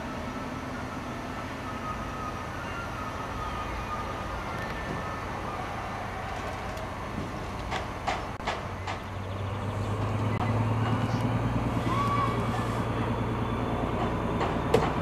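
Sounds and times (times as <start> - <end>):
diesel railcar rumbling: 0.0 - 15.0
train wheels clacking over points: 13.8 - 15.0.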